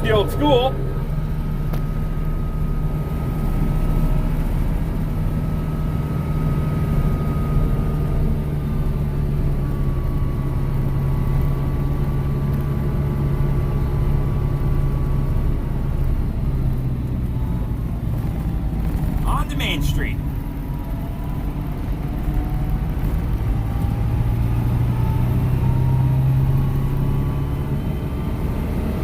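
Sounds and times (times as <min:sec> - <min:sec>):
tractor diesel engine running: 0:00.0 - 0:06.0, 0:12.8 - 0:21.6.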